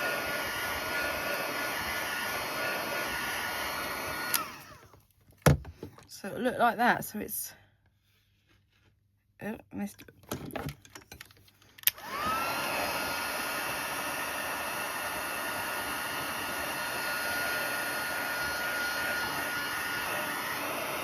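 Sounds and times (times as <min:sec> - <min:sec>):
fan blowing: 0:00.0 - 0:04.8, 0:11.9 - 0:21.0
heat gun motor whine: 0:00.0 - 0:05.0, 0:11.9 - 0:21.0.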